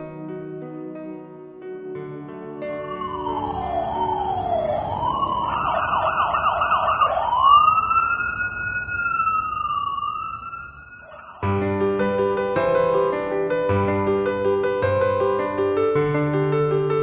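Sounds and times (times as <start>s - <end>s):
emergency vehicle siren: 2.6s - 13.1s.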